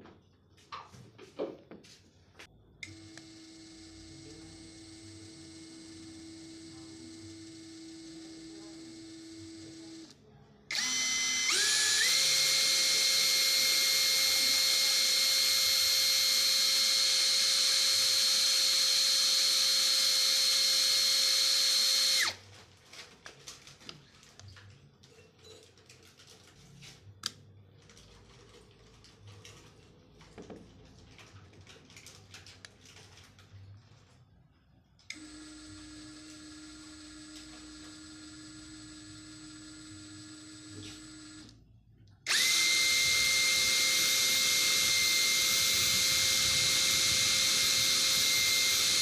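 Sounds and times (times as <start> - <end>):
cordless drill motor whining: 2.8 - 22.4, 35.1 - 41.6, 42.2 - 49.0.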